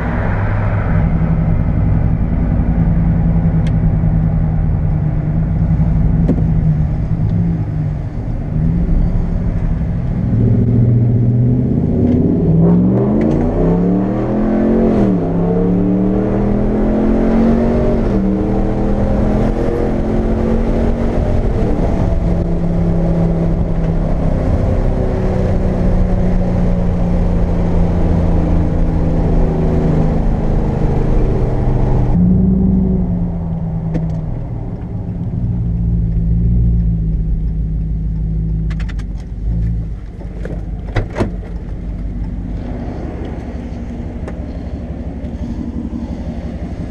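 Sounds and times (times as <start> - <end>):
road noise: 0.0 - 46.9
truck engine accelerating: 0.0 - 46.9.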